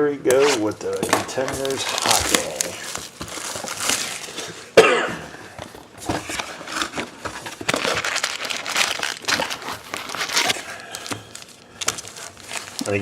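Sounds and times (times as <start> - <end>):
packaging crinkling and tearing: 0.3 - 4.8, 5.8 - 13.0
rustling: 5.6 - 13.0.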